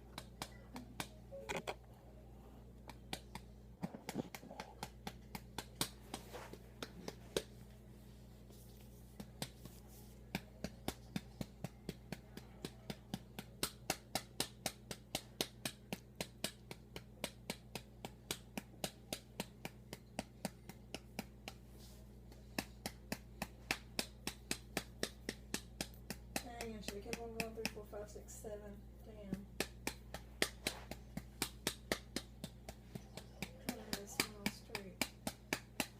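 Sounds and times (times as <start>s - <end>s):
steady low hum: 0.0s - 35.9s
hand patting doll's back: 8.6s - 21.6s, 29.2s - 35.9s.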